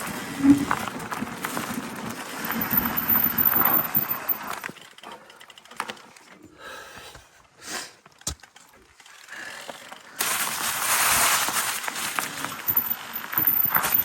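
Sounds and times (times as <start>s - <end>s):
bike tyre noise on trail: 0.0s - 14.0s
fine ticking: 2.4s - 4.7s.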